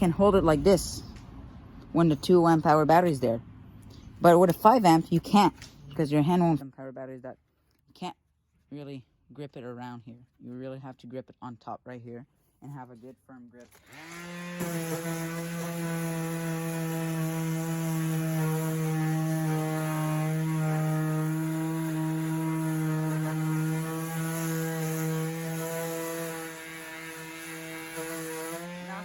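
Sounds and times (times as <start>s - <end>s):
orbital sander humming: 13.8s - 29.0s.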